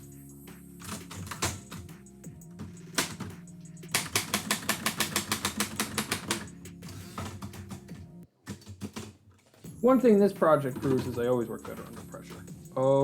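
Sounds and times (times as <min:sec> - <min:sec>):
typewriter keys striking paper: 0:03.9 - 0:06.5, 0:10.8 - 0:12.5.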